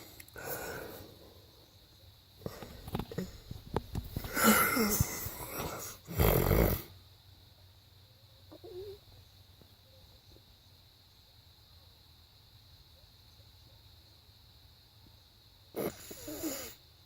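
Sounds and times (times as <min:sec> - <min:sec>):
man snoring: 0:04.3 - 0:06.9, 0:15.8 - 0:16.8.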